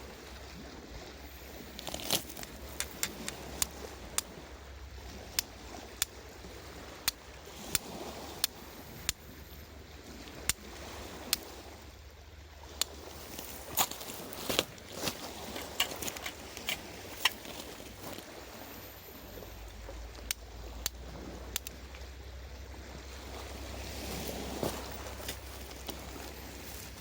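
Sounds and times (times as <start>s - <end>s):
campfire crackling and popping: 1.8s - 4.3s, 20.1s - 22.0s.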